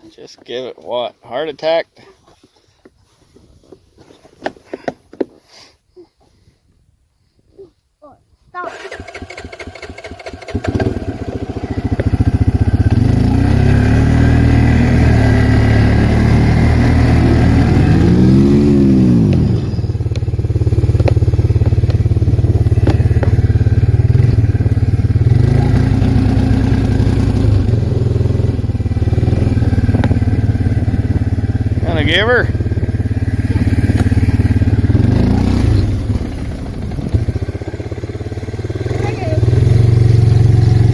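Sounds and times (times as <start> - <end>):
atv engine running: 8.6 - 40.9.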